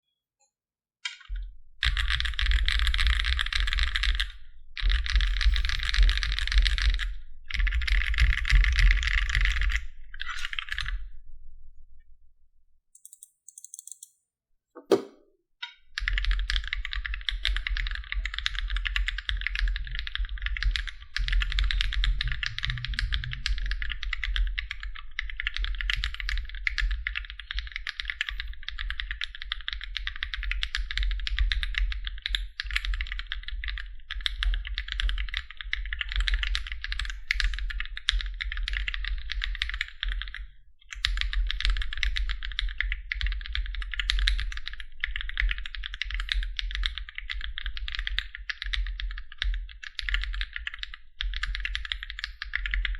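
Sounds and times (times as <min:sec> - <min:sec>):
mechanical keyboard typing: 0:13.0 - 0:14.1.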